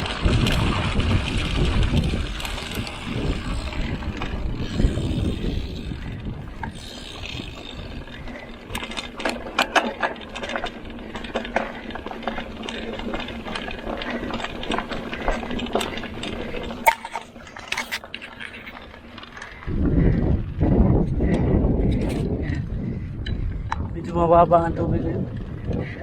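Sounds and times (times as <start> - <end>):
bike freehub ratchet buzzing: 0.0 - 17.1
bike clicks and rattles: 0.0 - 26.0.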